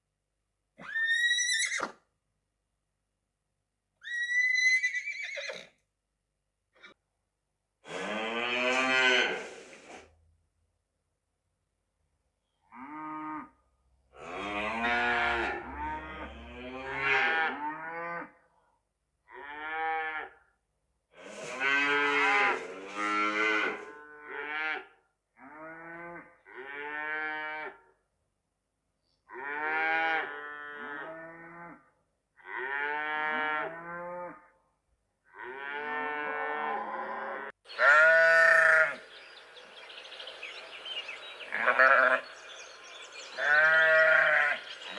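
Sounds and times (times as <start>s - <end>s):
cattle mooing: 14.2s - 18.3s.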